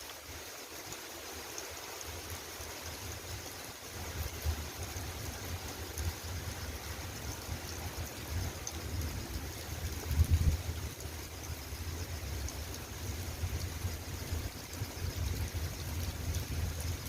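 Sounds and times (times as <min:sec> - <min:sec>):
steady rain falling: 0:00.0 - 0:17.0.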